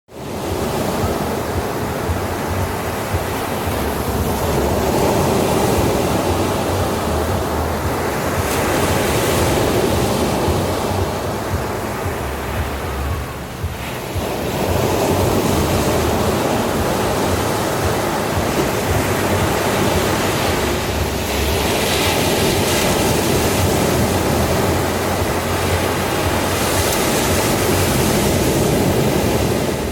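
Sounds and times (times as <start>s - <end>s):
ocean surf breaking: 0.1s - 29.9s.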